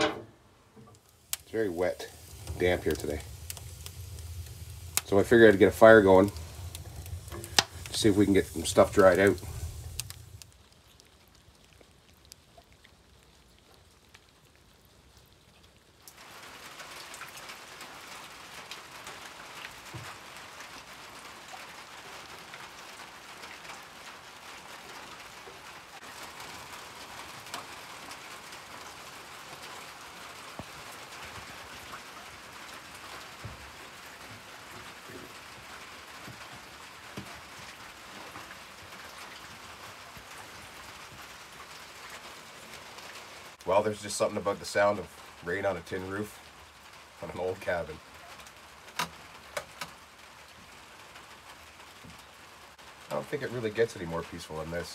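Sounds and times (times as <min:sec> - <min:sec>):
rain on a tin roof: 0:00.0 - 0:54.9.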